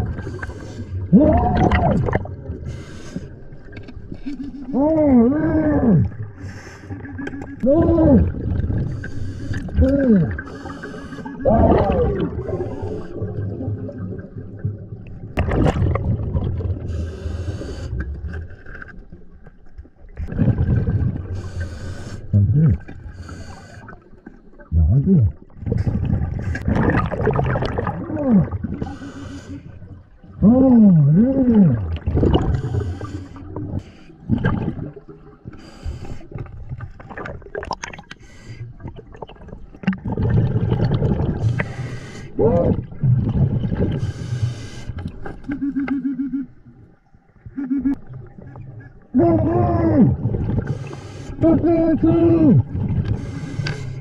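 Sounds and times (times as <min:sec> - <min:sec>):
muffled wordless vocal hums underwater: 0:00.0 - 0:02.8, 0:04.2 - 0:06.5, 0:07.1 - 0:14.2, 0:20.2 - 0:23.8, 0:24.5 - 0:26.0, 0:27.0 - 0:34.9, 0:41.0 - 0:44.1, 0:45.4 - 0:53.9.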